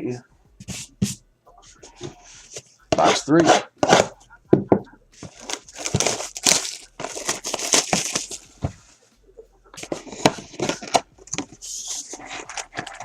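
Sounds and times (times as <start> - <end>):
plastic wrapping crinkling and tearing: 5.2 - 8.5.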